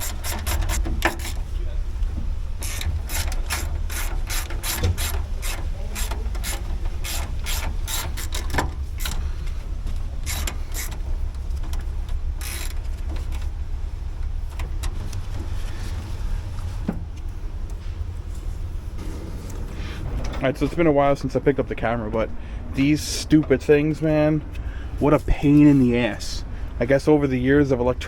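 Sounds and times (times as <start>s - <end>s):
ratchet wrench clicking: 0.0s - 1.4s, 2.6s - 9.2s, 10.2s - 11.0s, 12.4s - 12.9s
steady low rumble: 0.0s - 28.0s.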